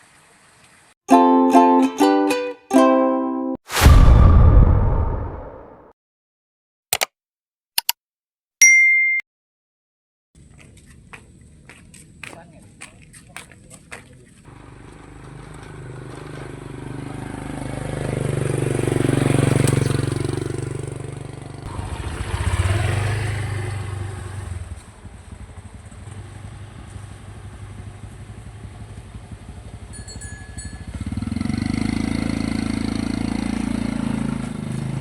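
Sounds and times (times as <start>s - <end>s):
vehicles passing by: 10.4s - 35.0s.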